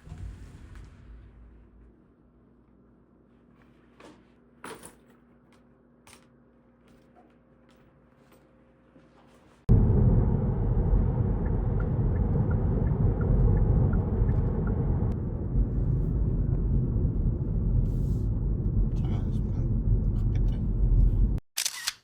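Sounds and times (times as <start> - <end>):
steady low rumble: 9.7 - 21.4.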